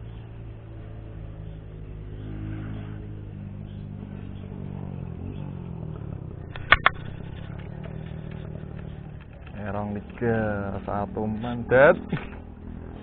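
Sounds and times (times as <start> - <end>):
engine running steadily: 0.0 - 13.0
sharp clicks: 6.4 - 10.5.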